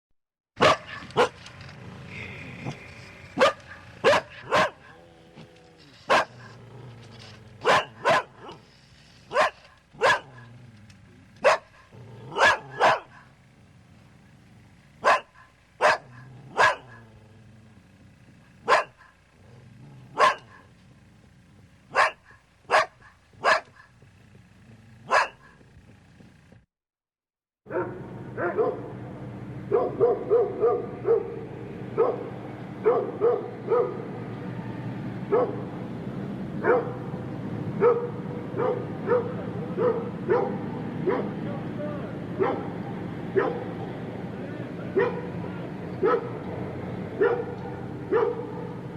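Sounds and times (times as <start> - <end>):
large dog barking: 0.6 - 1.5, 2.6 - 5.5, 6.1 - 8.6, 9.3 - 10.6, 11.3 - 13.4, 15.0 - 17.3, 18.5 - 20.8, 21.9 - 24.0, 24.7 - 25.7, 27.7 - 29.0, 29.6 - 34.2, 35.3 - 35.8, 36.6 - 37.2, 37.8 - 41.4, 42.3 - 44.0, 44.9 - 48.9.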